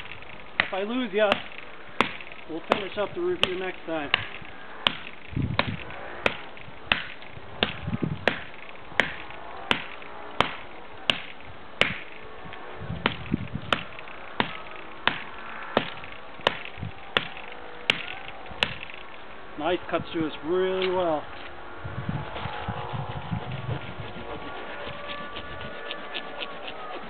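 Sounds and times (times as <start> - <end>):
blade chopping wood: 0.6 - 12.1, 13.0 - 19.0.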